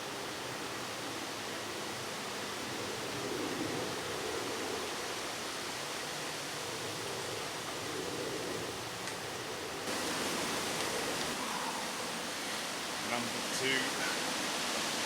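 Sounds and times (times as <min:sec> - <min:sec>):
rushing outdoor noise: 0:00.0 - 0:15.0.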